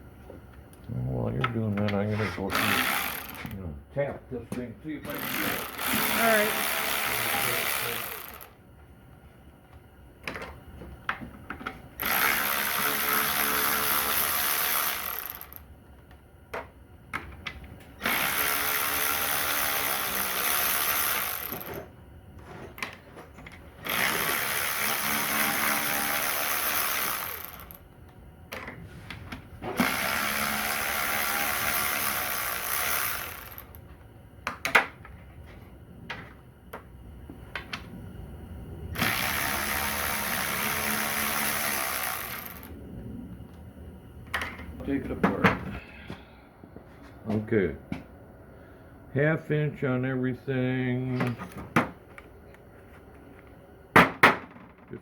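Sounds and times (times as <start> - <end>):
power tool spinning bolts: 2.5 - 3.6, 5.1 - 8.6, 12.0 - 15.7, 18.0 - 21.9, 23.8 - 27.8, 29.6 - 33.8, 38.9 - 42.8.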